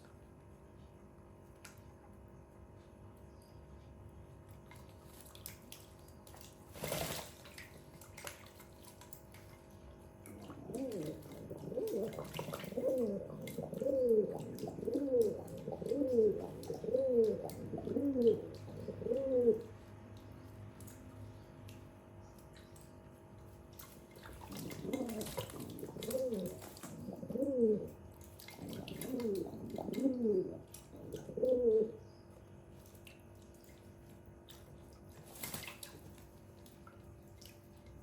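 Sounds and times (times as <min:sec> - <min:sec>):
pigeon cooing: 0:10.3 - 0:19.8, 0:24.4 - 0:28.0, 0:28.6 - 0:32.0.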